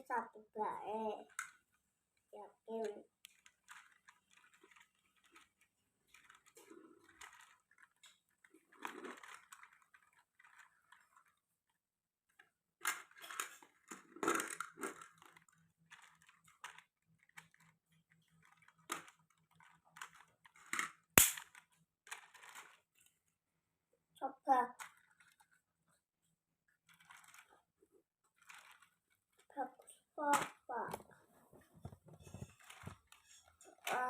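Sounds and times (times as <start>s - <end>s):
plastic parts clicking: 3.2s - 11.3s, 12.8s - 22.8s, 26.9s - 27.6s
sharp click: 21.2s - 21.4s.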